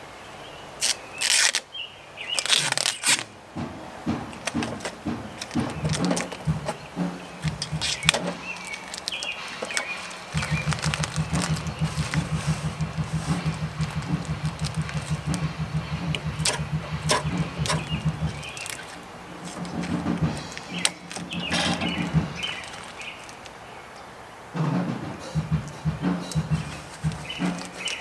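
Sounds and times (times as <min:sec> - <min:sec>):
birds chirping: 0:00.0 - 0:28.0
lawn mower engine chugging: 0:02.2 - 0:28.0.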